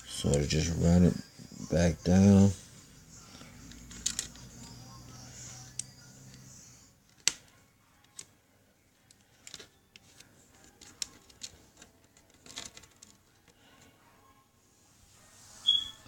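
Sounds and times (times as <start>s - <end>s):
plastic laptop parts clicking: 3.7s - 4.4s, 7.1s - 8.3s, 9.0s - 13.6s.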